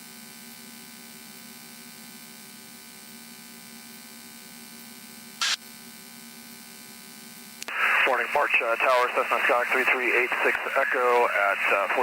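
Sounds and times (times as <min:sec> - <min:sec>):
radio squelch noise: 0:07.7 - 0:12.0.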